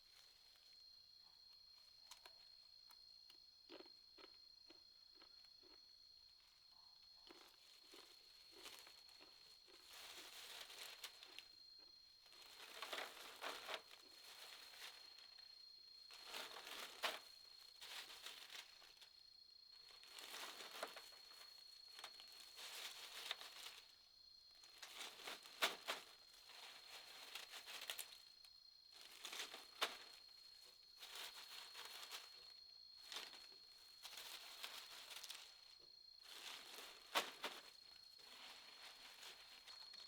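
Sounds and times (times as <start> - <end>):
rustling and crinkling: 7.3 - 11.6, 12.2 - 15.5, 16.1 - 19.2, 19.8 - 24.0, 24.6 - 28.3, 28.9 - 40.0.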